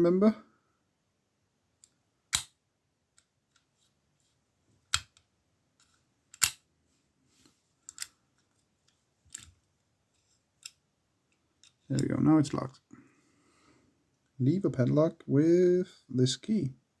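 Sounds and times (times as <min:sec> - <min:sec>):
padlock metal clicks: 0:02.3 - 0:02.6, 0:04.9 - 0:05.2, 0:06.3 - 0:06.6, 0:07.9 - 0:08.1.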